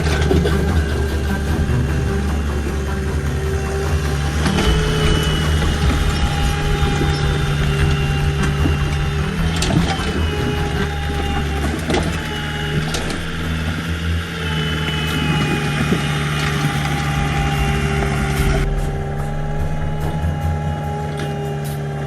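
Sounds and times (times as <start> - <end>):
sharp metallic knocks: 0.0 - 14.3
diesel engine running: 0.0 - 22.0
high whine: 0.0 - 22.0.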